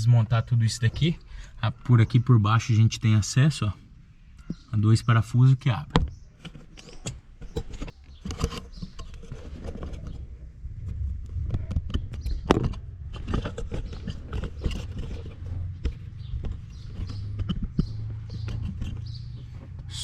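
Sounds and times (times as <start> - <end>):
plastic parts scraping: 5.7 - 20.0.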